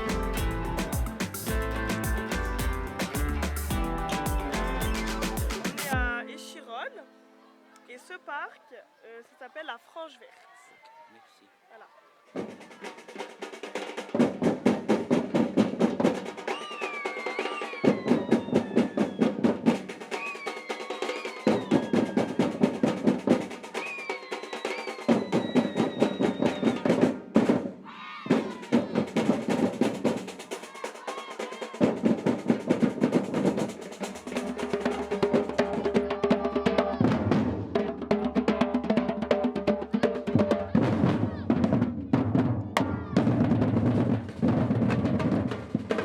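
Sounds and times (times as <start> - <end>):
low bass drum pattern: 0.0 - 6.1
samba percussion drumming: 0.0 - 6.3, 12.3 - 46.0
steady pitched tones: 0.0 - 7.5.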